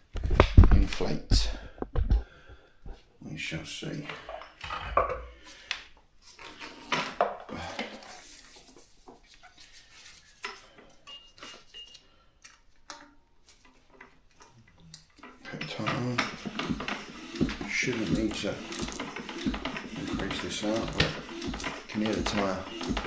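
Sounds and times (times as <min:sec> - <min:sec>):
tyre being inflated: 0:06.3 - 0:10.8, 0:15.5 - 0:23.0.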